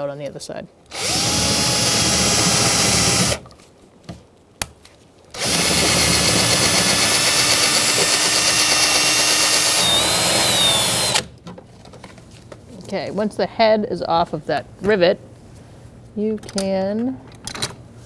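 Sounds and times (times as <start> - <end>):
power drill drilling metal: 0.9 - 3.4, 5.4 - 11.3
drill click: 0.9 - 3.5, 5.4 - 11.3.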